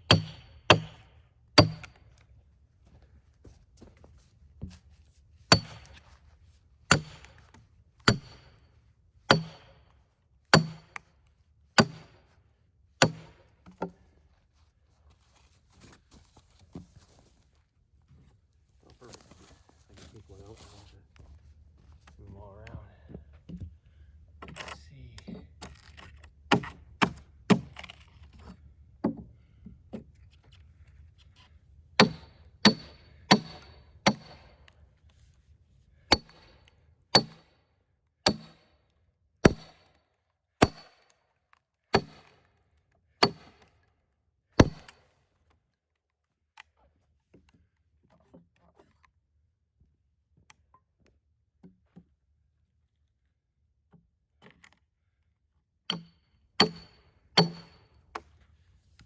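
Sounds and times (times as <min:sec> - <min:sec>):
hammer striking steel wedge: 0:00.1 - 0:02.0, 0:05.5 - 0:06.0, 0:06.9 - 0:07.4, 0:08.1 - 0:08.5, 0:09.3 - 0:09.8, 0:10.6 - 0:11.0, 0:11.8 - 0:12.2, 0:13.0 - 0:13.4, 0:32.0 - 0:34.5, 0:36.1 - 0:36.6, 0:37.2 - 0:37.5, 0:38.3 - 0:38.6, 0:39.4 - 0:39.8, 0:40.6 - 0:41.0, 0:41.9 - 0:42.3, 0:43.2 - 0:43.6, 0:44.6 - 0:45.0, 0:55.9 - 0:57.8.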